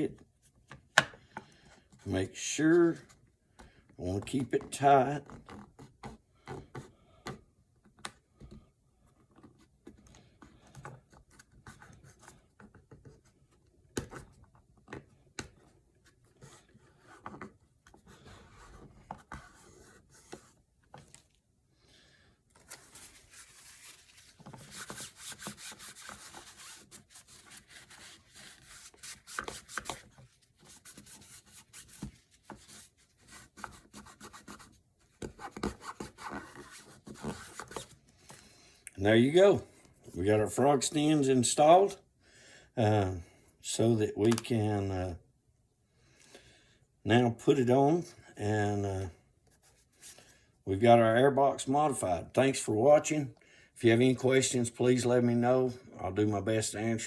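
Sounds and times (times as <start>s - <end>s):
hands rubbing material: 22.7s - 37.9s.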